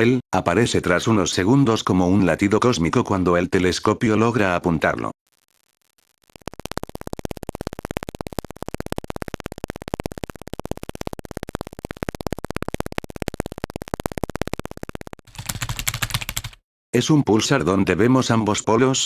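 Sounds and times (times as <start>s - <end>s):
noisy hiss: 0.0s - 5.2s
fast train of clicks: 15.3s - 16.6s.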